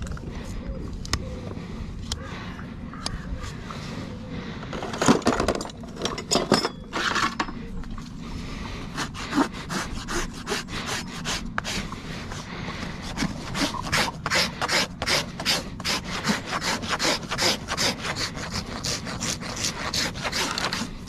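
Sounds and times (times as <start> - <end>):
rasp scraping horse's hoof: 6.8 - 7.4, 8.9 - 21.0.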